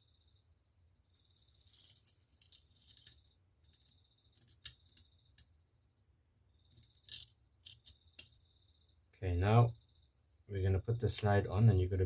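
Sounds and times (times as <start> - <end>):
metal pistol parts clinking: 1.2 - 5.5, 6.7 - 8.3.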